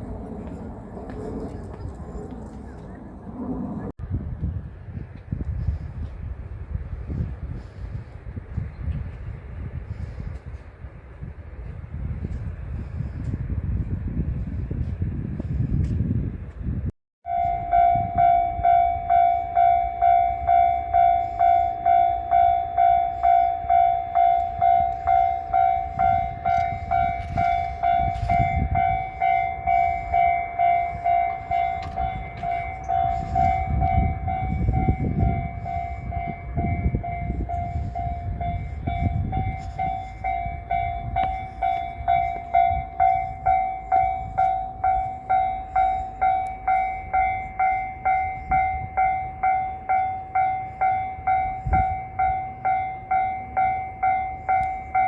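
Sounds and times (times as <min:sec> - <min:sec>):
passing trains rumbling: 0:00.0 - 0:55.0
level crossing alarm ringing: 0:17.2 - 0:55.0.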